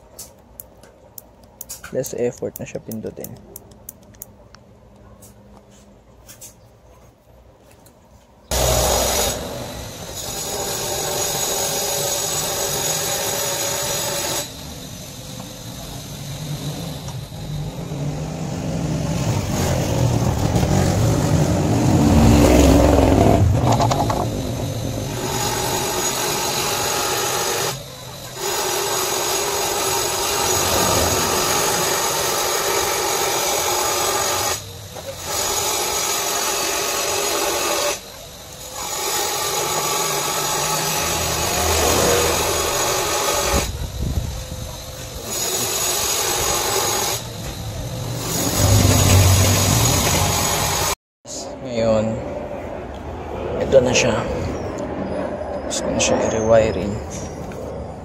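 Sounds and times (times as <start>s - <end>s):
small power tool running: 8.5s - 51.0s.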